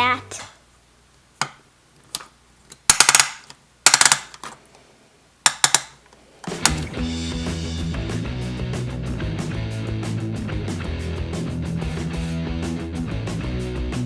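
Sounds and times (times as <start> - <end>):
plastic toy pieces clattering: 2.9 - 4.6
guitar music: 6.5 - 14.0.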